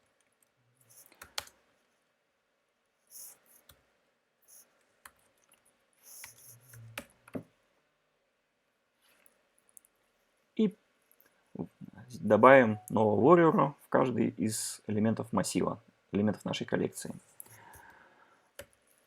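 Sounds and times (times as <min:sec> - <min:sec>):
keyboard typing: 0:00.9 - 0:01.6.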